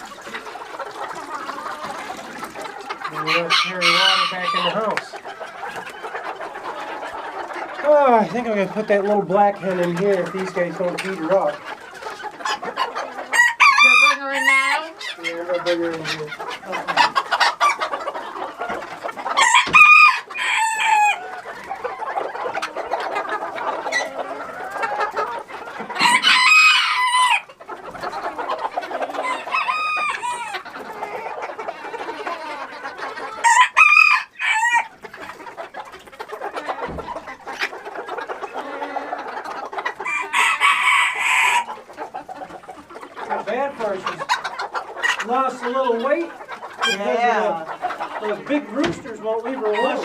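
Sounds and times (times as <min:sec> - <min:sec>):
hens clucking: 0:00.0 - 0:50.0
roosters crowing: 0:01.2 - 0:09.4, 0:12.3 - 0:35.1, 0:40.0 - 0:41.8, 0:46.8 - 0:50.0.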